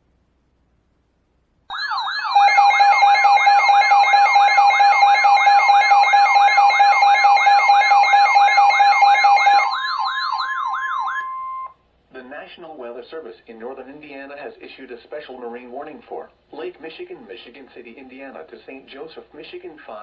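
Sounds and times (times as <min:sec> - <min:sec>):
warbling siren: 0:01.7 - 0:11.7
steady alarm tones: 0:01.7 - 0:11.8.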